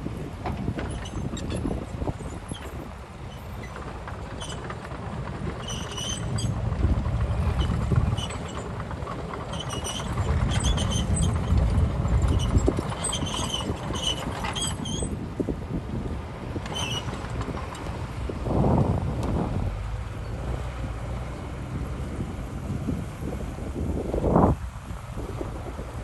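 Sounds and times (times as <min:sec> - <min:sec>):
diesel machinery rumbling: 0:00.0 - 0:26.0
short high squeaks: 0:05.6 - 0:06.6, 0:09.5 - 0:11.6, 0:12.2 - 0:15.2, 0:16.6 - 0:17.3.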